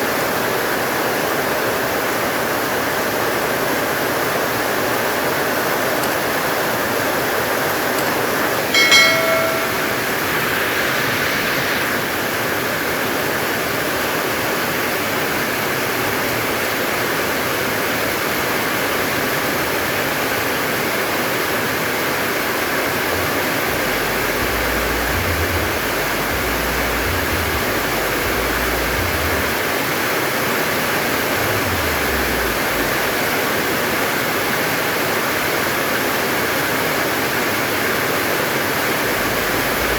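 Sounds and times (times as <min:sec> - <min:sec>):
heavy rain: 0:10.0 - 0:39.9.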